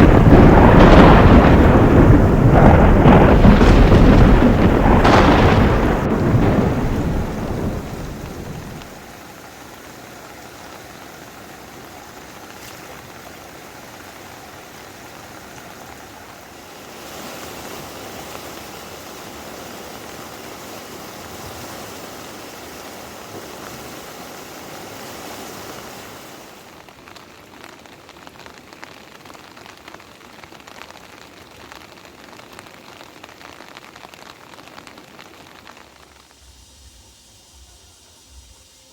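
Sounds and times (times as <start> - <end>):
thunder rumble: 0.0 - 9.1, 35.8 - 38.9
steady rain: 0.0 - 38.9.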